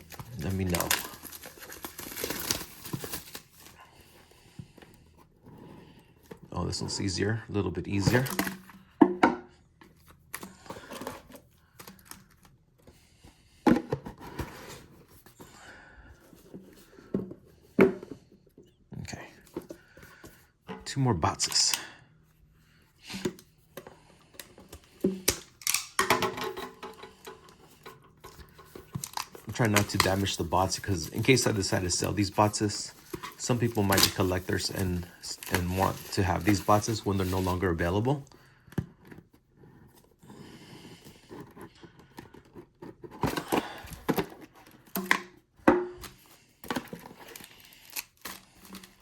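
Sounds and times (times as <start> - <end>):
packaging scraping and rubbing: 28.7 - 37.8.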